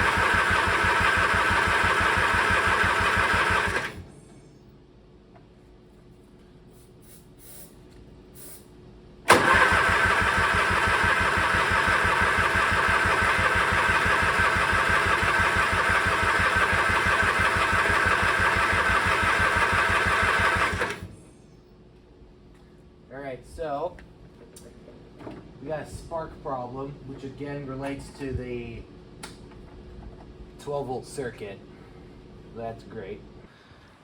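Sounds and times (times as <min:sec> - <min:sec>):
electric starter cranking engine: 0:00.0 - 0:04.0, 0:09.3 - 0:21.1.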